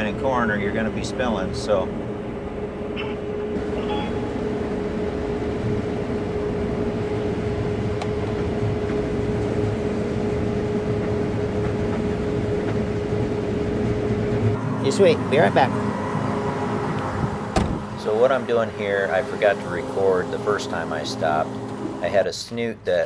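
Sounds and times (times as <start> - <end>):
combine harvester engine running: 0.0 - 23.0
steady tone: 14.5 - 22.2.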